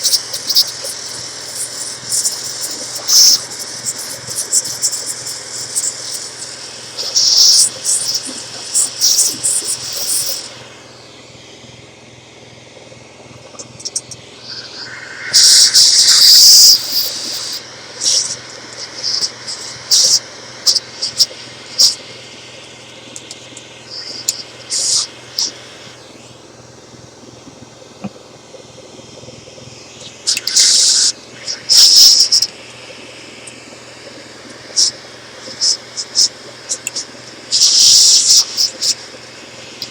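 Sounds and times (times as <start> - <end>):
compressed air blasts hissing: 0.0 - 10.6, 13.9 - 18.4, 30.3 - 32.5
machine hum: 0.0 - 39.9.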